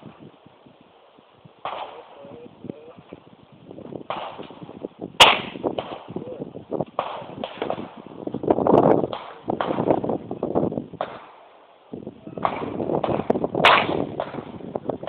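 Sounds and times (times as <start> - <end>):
pistol shot: 1.6 - 2.1, 4.1 - 4.6, 5.2 - 6.2, 7.0 - 8.0, 9.1 - 10.1, 11.0 - 11.4, 12.4 - 14.6.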